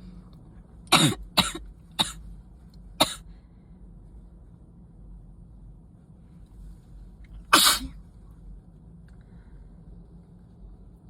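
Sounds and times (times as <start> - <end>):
person sneezing: 7.5 - 8.0.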